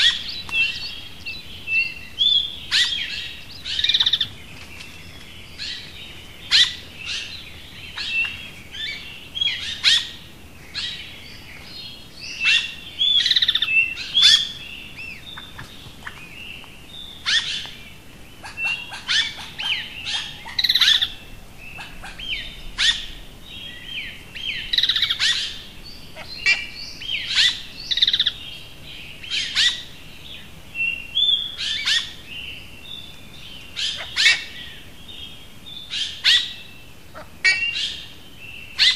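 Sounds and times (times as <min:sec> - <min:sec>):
songbirds chirping and singing: 0:00.0 - 0:38.9.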